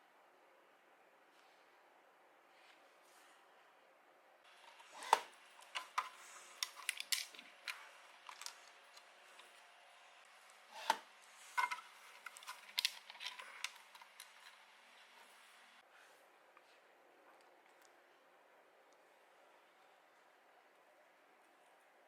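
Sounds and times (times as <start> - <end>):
plastic parts clicking and tapping: 4.6 - 9.5, 11.6 - 14.6.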